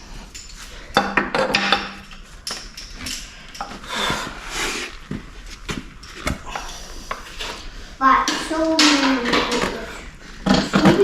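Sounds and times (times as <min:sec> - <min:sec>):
sharp metal clanks and knocks: 0:00.3 - 0:03.8, 0:08.2 - 0:11.0.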